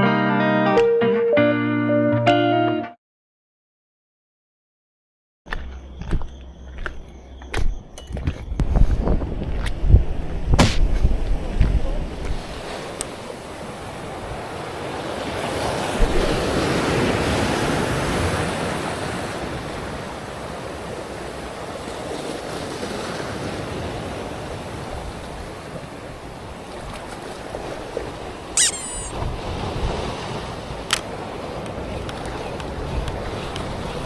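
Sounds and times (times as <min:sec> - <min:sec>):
wind: 0:05.5 - 0:34.0
waves washing on shore: 0:12.0 - 0:34.0
short high-pitched sound: 0:28.6 - 0:29.2.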